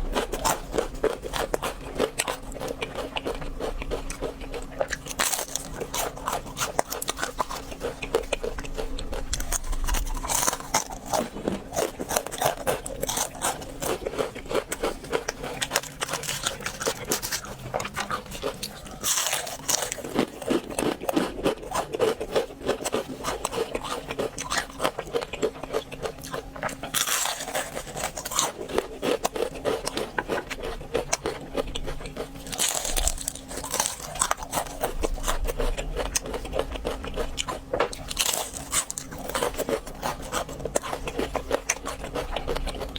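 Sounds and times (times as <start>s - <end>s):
bite crunch: 0.0s - 42.9s
person chewing crispy food: 0.0s - 42.9s.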